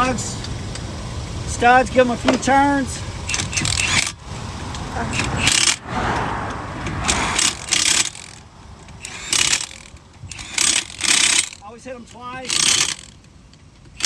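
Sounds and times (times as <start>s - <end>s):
highway traffic rushing past: 0.0s - 14.0s
metallic clinks of lug bolts: 6.9s - 14.0s.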